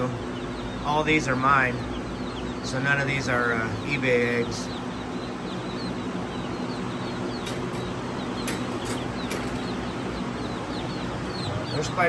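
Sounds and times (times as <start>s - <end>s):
chicks peeping: 0.0s - 12.0s
sharp ticks: 7.4s - 10.0s.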